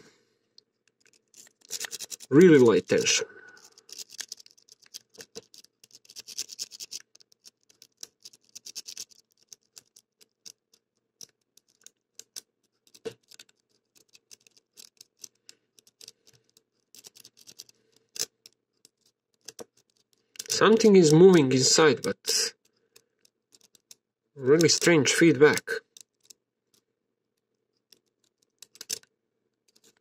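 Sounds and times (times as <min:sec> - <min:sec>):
lock pick scraping and clicking: 0:00.7 - 0:02.4, 0:03.5 - 0:20.6, 0:22.6 - 0:24.0, 0:25.9 - 0:29.1, 0:29.7 - 0:30.0.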